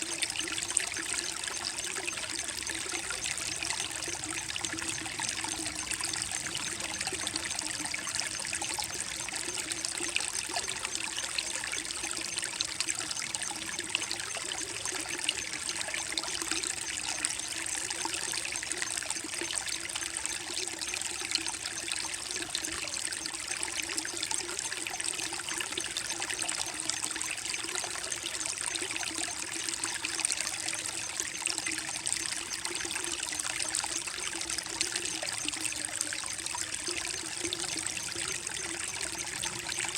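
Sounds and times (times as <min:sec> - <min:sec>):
creek water trickling over rocks: 0:00.0 - 0:39.9.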